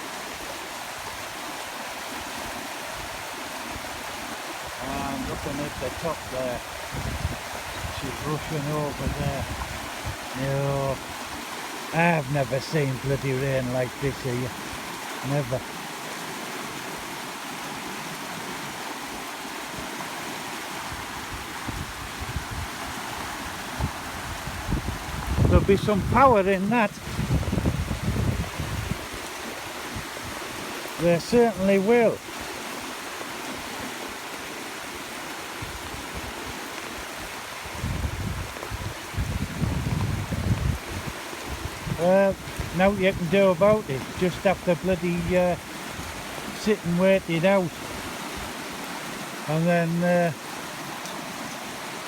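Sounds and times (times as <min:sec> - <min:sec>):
floodwater rushing: 0:00.0 - 0:52.0
wind buffeting microphone: 0:05.0 - 0:11.4, 0:20.9 - 0:30.7, 0:35.6 - 0:44.4.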